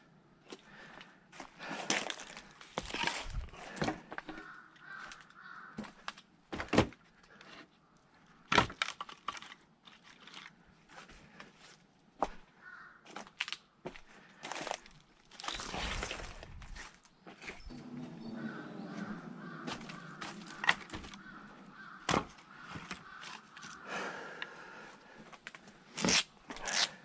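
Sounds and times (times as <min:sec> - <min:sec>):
crows cawing: 0:03.5 - 0:06.2, 0:12.2 - 0:13.3, 0:17.8 - 0:25.7
wood knocking and scuffling: 0:15.4 - 0:23.8
axe splitting logs: 0:22.0 - 0:23.0.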